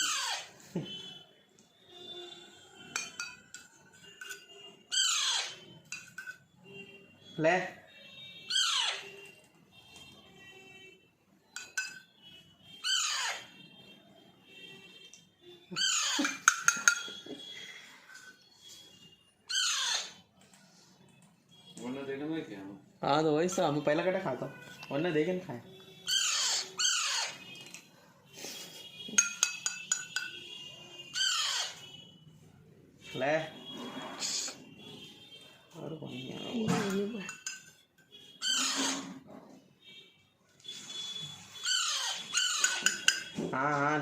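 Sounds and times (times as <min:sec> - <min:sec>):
parrot calling: 0:00.0 - 0:00.6, 0:04.9 - 0:05.7, 0:08.5 - 0:09.2, 0:12.8 - 0:13.5, 0:15.7 - 0:17.1, 0:19.5 - 0:20.2, 0:26.0 - 0:27.5, 0:30.9 - 0:32.0, 0:34.1 - 0:34.6, 0:38.4 - 0:39.2, 0:41.5 - 0:43.3.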